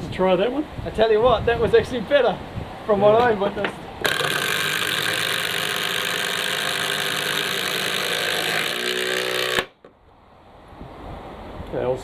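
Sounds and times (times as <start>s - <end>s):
impact driver driving screw: 4.0s - 9.7s.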